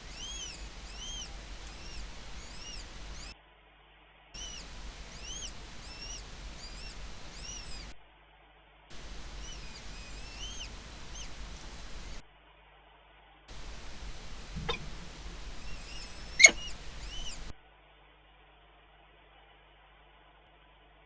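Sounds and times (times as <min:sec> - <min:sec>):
low background hum: 0:00.0 - 0:03.3, 0:04.4 - 0:08.0, 0:08.9 - 0:12.2, 0:13.5 - 0:17.5
nestling birds chirping: 0:00.0 - 0:03.3, 0:04.4 - 0:08.0, 0:08.9 - 0:12.2, 0:13.5 - 0:17.5.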